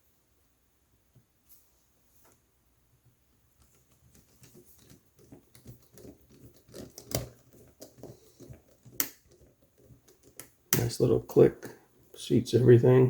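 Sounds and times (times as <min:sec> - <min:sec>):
small plastic clicks and taps: 0:03.6 - 0:10.9.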